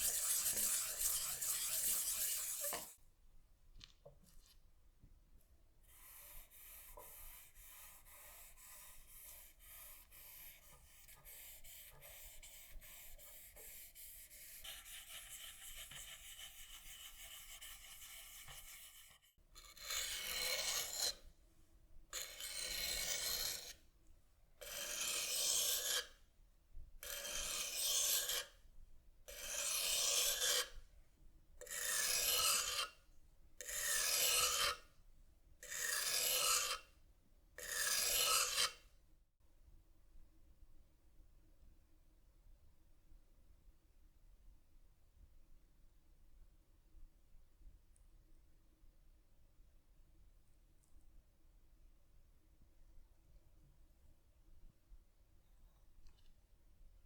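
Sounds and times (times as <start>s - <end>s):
abrasive scratching on knife: 0.0s - 3.0s, 22.4s - 23.8s, 24.7s - 26.2s, 27.0s - 28.5s, 29.4s - 30.7s, 31.7s - 33.0s, 33.7s - 34.8s, 35.7s - 36.9s, 37.6s - 38.8s.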